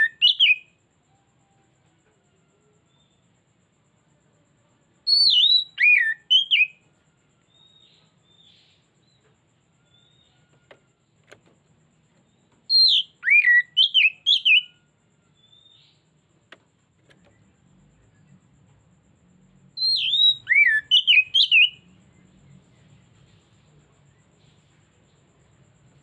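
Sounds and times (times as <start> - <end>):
bird singing whistled phrases: 0.0 - 0.7, 5.1 - 6.8, 12.7 - 14.8, 19.8 - 21.9.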